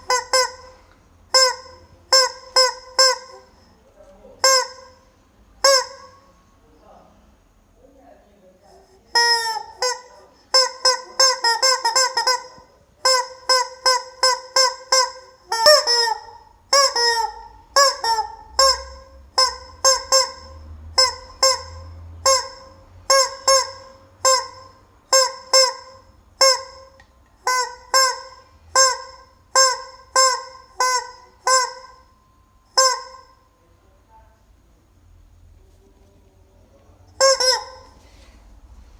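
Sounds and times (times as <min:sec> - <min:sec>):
rubber chicken toy squeaking: 0:00.0 - 0:03.7, 0:04.4 - 0:06.3, 0:09.1 - 0:32.1, 0:32.7 - 0:33.4, 0:37.2 - 0:38.0.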